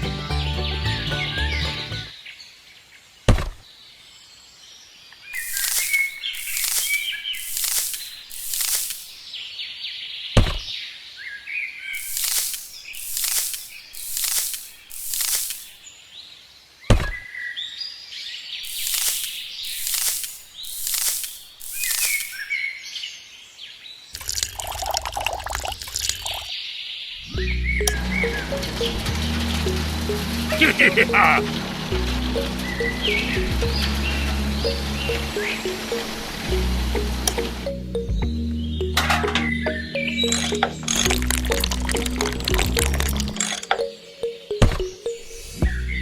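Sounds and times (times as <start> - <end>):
small birds chirping: 5.0 - 10.9, 11.9 - 16.4, 18.0 - 23.3
hissing bursts: 5.4 - 9.2, 12.0 - 15.8, 18.6 - 22.6
sharp knock: 10.4 - 10.7, 16.9 - 17.2.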